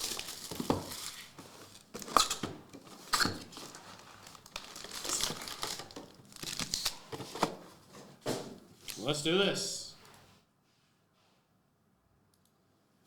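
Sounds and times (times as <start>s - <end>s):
plastic ripping: 0.0s - 7.5s
plastic wrapping crinkling: 0.0s - 7.5s.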